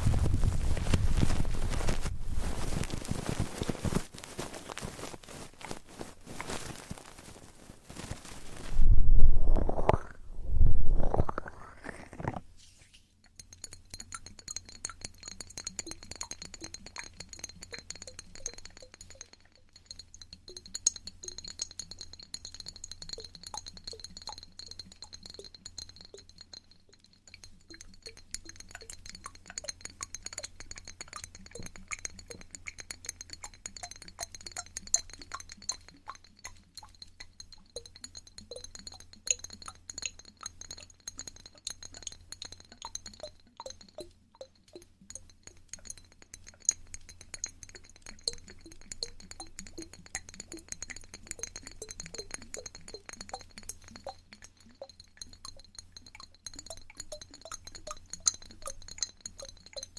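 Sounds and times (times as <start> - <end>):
small clicks and light clinks: 13.2 - 59.9.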